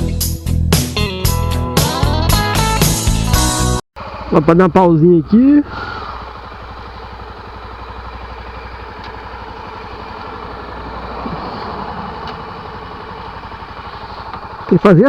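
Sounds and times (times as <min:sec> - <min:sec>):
motorcycle engine idling: 0:03.9 - 0:15.0.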